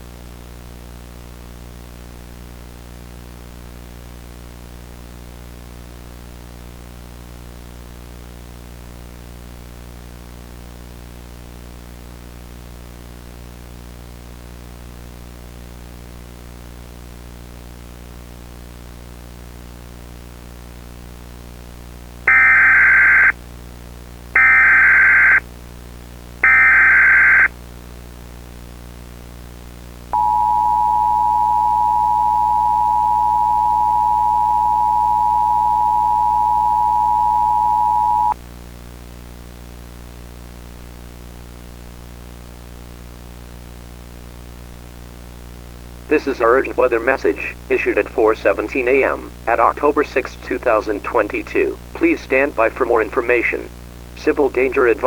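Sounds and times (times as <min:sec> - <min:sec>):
data tone bursts: 0:22.3 - 0:23.3, 0:24.4 - 0:25.4, 0:26.4 - 0:27.5, 0:30.2 - 0:38.4
two-tone alert signal: 0:22.3 - 0:23.3, 0:24.4 - 0:25.4, 0:26.4 - 0:27.5, 0:30.2 - 0:38.4
steady low hum: 0:30.2 - 0:38.4.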